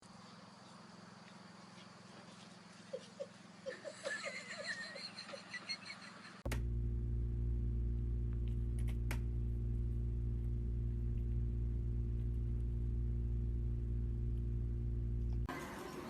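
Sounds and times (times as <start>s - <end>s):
steady low hum: 6.4s - 15.5s.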